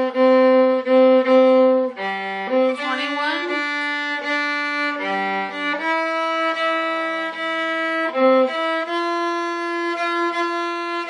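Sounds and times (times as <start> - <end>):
bowed viola melody: 0.0 - 11.0.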